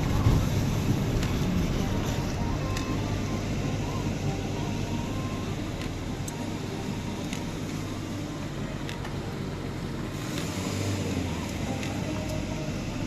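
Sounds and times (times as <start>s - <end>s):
car interior road noise: 0.0s - 13.0s.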